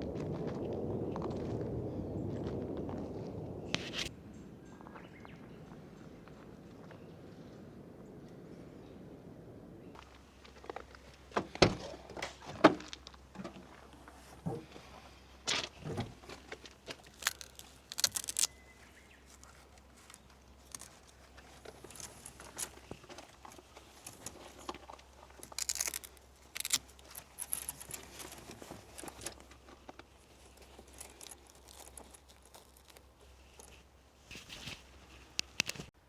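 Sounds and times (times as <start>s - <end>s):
gear clicking and clinking: 17.0s - 18.6s, 19.8s - 33.8s.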